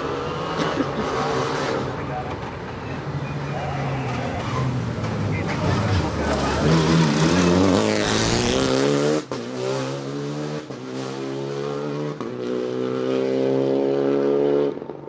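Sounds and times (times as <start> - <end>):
rally car engine accelerating: 4.4 - 14.9.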